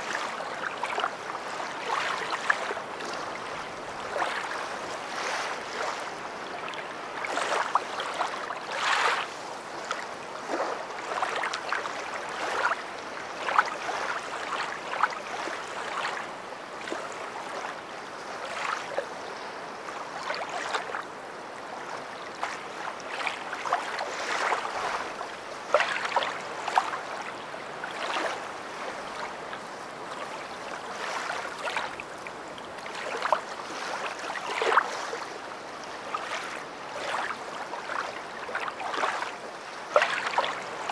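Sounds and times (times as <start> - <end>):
river water flowing: 0.0 - 40.9.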